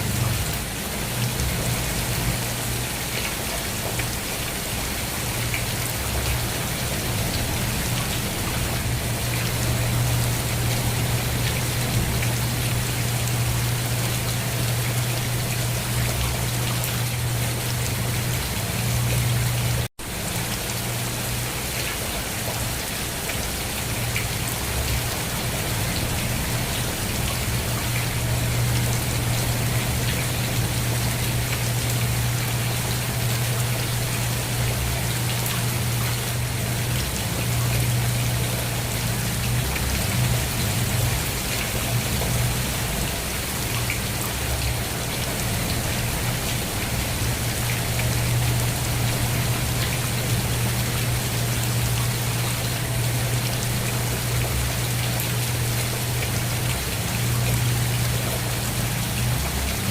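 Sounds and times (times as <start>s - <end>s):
constant low hum: 0.0s - 22.7s, 23.6s - 59.9s
rain pattering on a surface: 0.0s - 59.9s.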